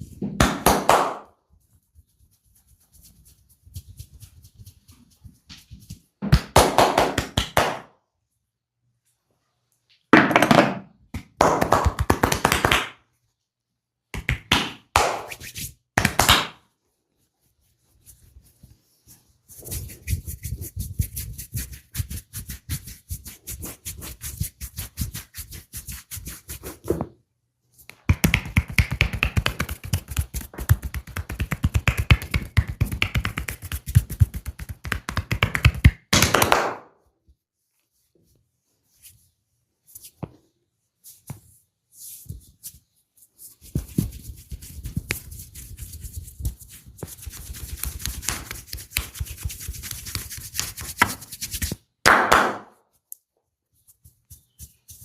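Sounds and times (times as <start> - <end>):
rapid percussive massage strikes: 28.1 - 36.8.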